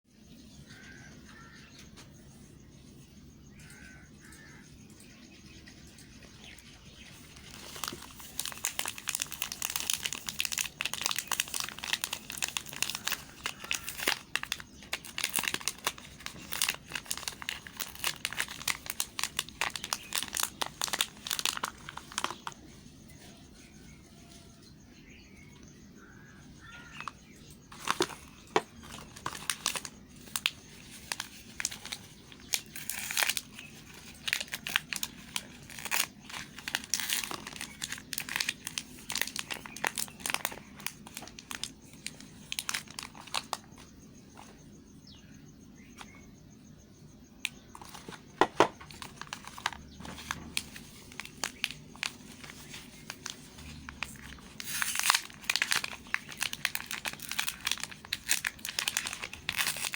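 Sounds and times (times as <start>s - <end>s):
wrappers crinkling: 6.4s - 22.8s, 26.7s - 44.6s, 47.4s - 59.9s.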